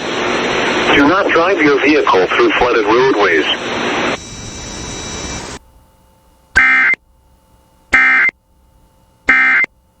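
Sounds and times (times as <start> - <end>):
radio hiss: 0.0 - 5.6
buzzing digital data bursts: 6.6 - 7.0, 7.9 - 8.4, 9.3 - 9.7.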